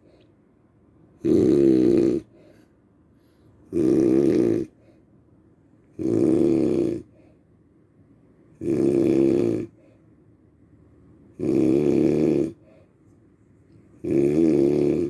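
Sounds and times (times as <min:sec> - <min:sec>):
loud snoring: 0:01.2 - 0:02.3, 0:03.7 - 0:04.7, 0:06.0 - 0:07.1, 0:08.6 - 0:09.8, 0:11.4 - 0:12.6, 0:14.0 - 0:15.0.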